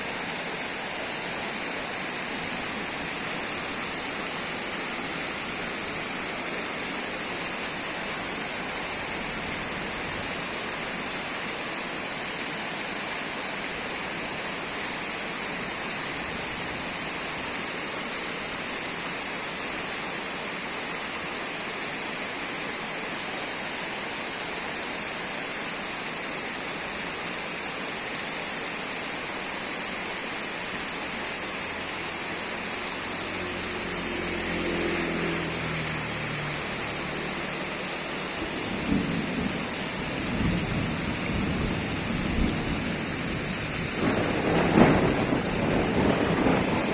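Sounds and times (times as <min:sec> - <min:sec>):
heavy rain hissing: 0:00.0 - 0:46.9
low engine hum: 0:32.8 - 0:40.0.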